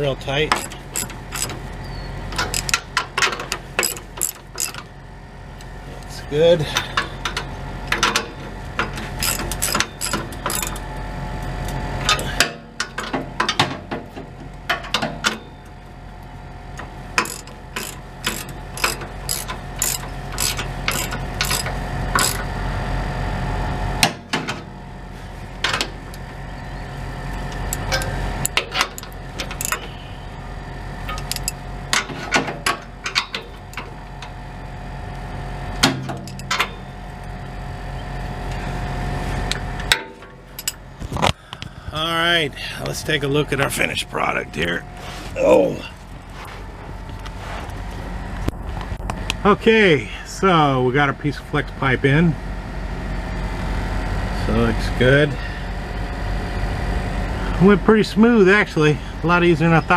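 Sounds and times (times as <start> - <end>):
ratchet wrench clicking: 0.5 - 1.6, 2.4 - 2.9, 3.8 - 4.8, 9.2 - 10.8, 17.2 - 22.5, 27.7 - 29.9, 31.1 - 31.6.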